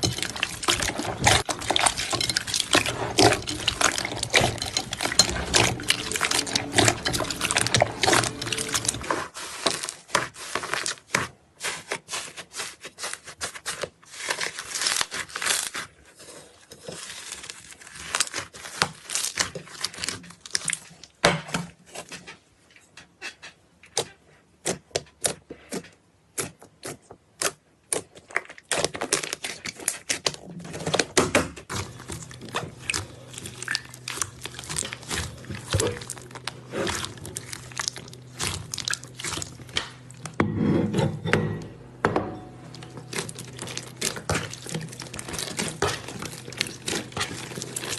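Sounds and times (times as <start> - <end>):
low steady hum: 0.0 - 9.1, 31.7 - 47.9.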